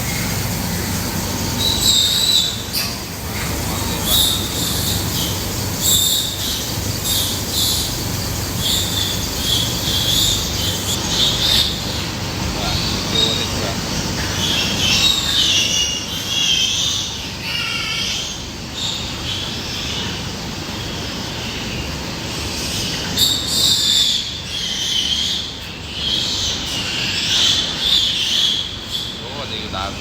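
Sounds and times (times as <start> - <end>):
pigs squealing: 0.0 - 18.4.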